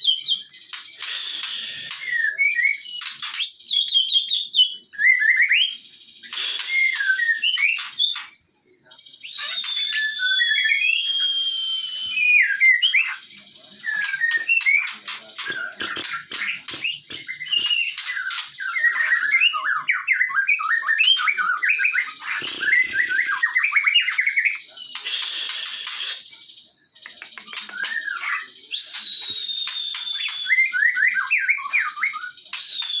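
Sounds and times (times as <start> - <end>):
bird chirping song: 0.0 - 33.0
bird falling whistle: 6.3 - 7.7, 9.3 - 12.4, 28.8 - 31.1, 32.6 - 33.0.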